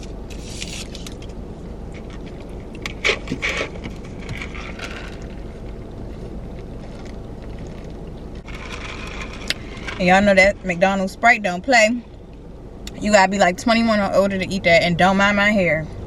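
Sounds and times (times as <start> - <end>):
rustling and handling noise: 0.0 - 10.5
car cabin rumble: 0.0 - 16.0.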